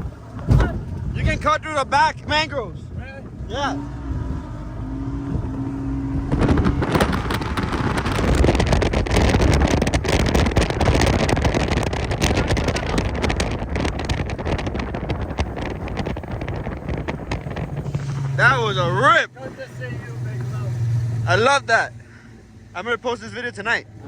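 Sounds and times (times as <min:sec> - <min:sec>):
boat engine: 0:00.0 - 0:24.0
wind buffeting microphone: 0:00.0 - 0:24.0
rushing water: 0:04.5 - 0:24.0.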